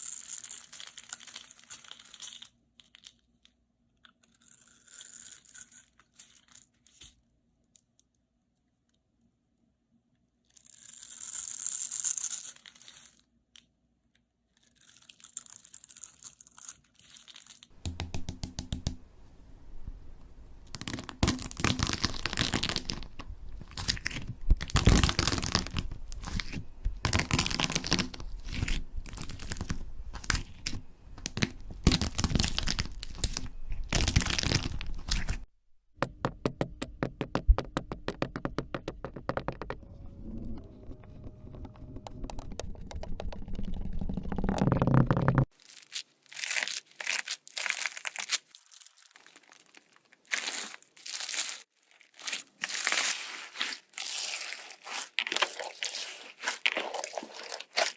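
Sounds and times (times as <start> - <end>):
craft material crackling and tearing: 20.7 - 35.5, 40.7 - 57.9.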